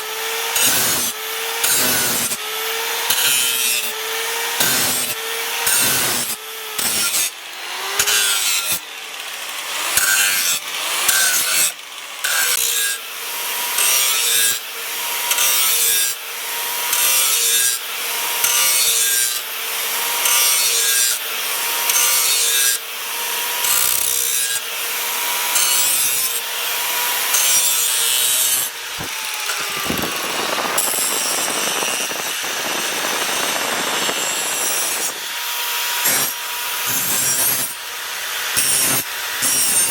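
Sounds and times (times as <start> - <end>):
hand tool rasping: 0.4 - 2.4, 3.0 - 13.0, 23.6 - 39.9.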